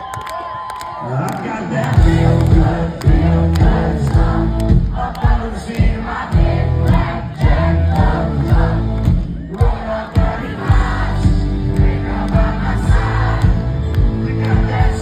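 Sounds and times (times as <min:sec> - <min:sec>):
crowd voices: 0:01.0 - 0:15.0
person singing: 0:01.0 - 0:15.0
live country band playing: 0:02.0 - 0:05.4, 0:06.4 - 0:09.2, 0:10.2 - 0:15.0
steady drum beat: 0:02.0 - 0:15.0.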